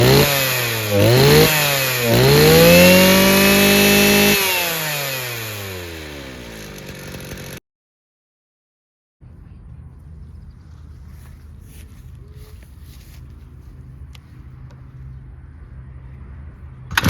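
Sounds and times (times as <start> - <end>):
brush cutter engine revving: 0.0 - 7.6.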